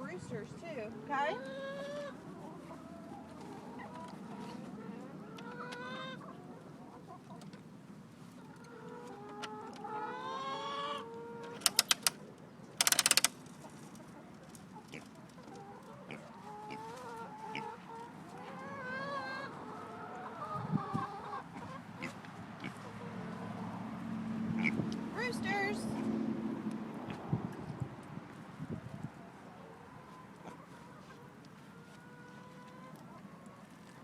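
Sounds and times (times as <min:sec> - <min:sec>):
chickens clucking: 0:00.1 - 0:34.0
rapid rattle of clicks: 0:11.5 - 0:12.2, 0:12.8 - 0:13.6
sharp clicks: 0:11.5 - 0:12.2, 0:12.8 - 0:13.6.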